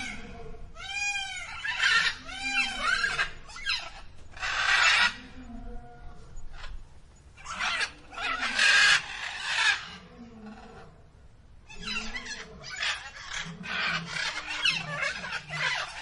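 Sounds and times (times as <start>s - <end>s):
peafowl calling harshly: 0.0s - 5.3s, 7.4s - 10.0s, 11.7s - 16.0s.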